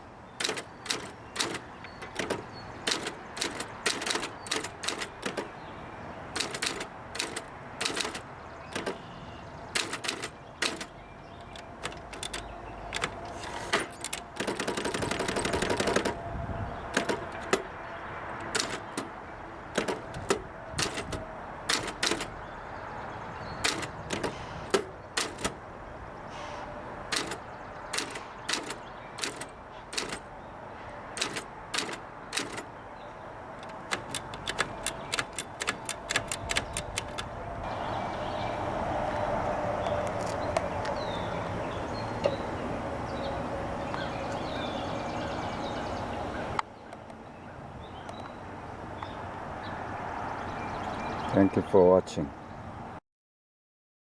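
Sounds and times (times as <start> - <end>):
manual typewriter key strikes: 0.4 - 5.7, 6.3 - 16.2, 16.9 - 22.4, 23.5 - 25.7, 27.0 - 30.4, 31.1 - 32.8, 33.6 - 37.3.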